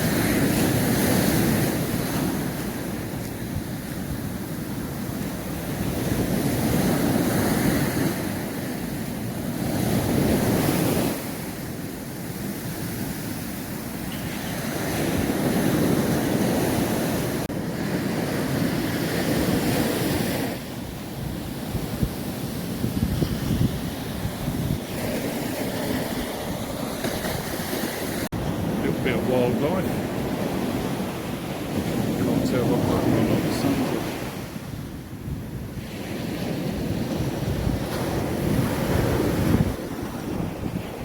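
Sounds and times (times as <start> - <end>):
waves breaking on beach: 0.0 - 41.0
wind buffeting microphone: 0.0 - 41.0.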